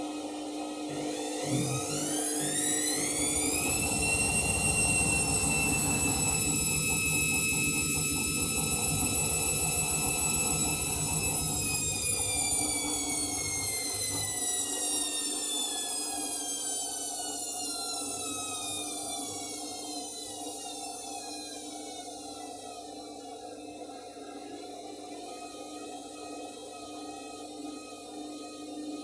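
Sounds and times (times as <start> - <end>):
washing machine motor whining: 0.3 - 24.6.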